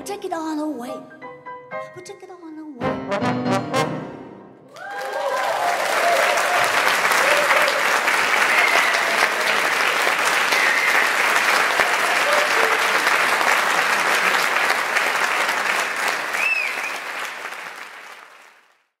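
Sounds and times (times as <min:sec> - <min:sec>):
audience applauding: 0:04.7 - 0:19.0.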